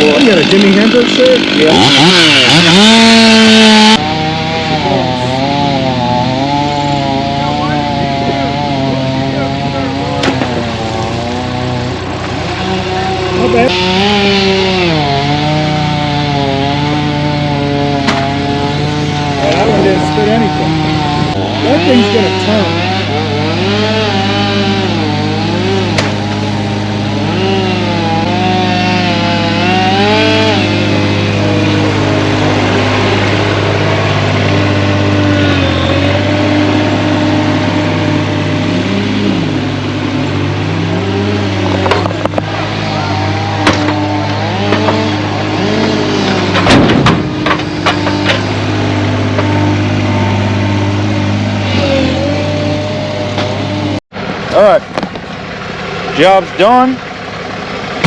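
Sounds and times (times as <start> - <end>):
chainsaw cutting: 0.0 - 58.0
engine droning: 0.0 - 58.0
sharp knocks: 10.2 - 10.8, 18.0 - 18.4, 25.9 - 26.3, 43.6 - 45.2, 46.2 - 48.6.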